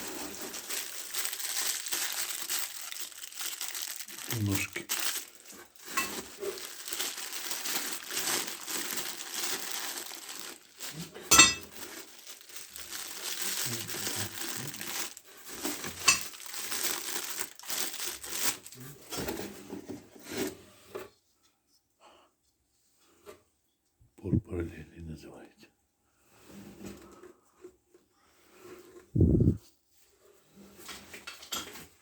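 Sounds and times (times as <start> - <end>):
plastic wrap crinkling: 0.0 - 19.2.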